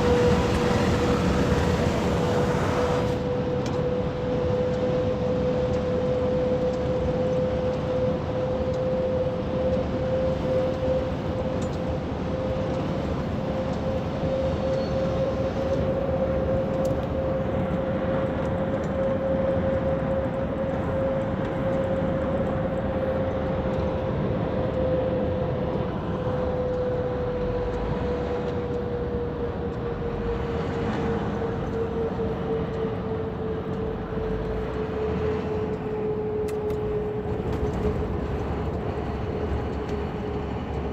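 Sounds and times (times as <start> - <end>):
wheel hum dropping in pitch: 0.0 - 3.3
truck road drone: 0.0 - 40.9.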